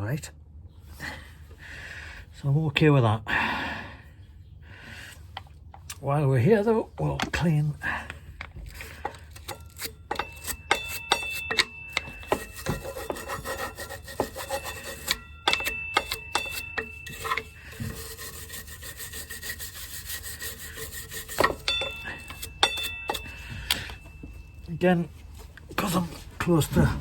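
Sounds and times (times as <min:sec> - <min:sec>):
brush scrubbing metal: 0:08.4 - 0:24.0.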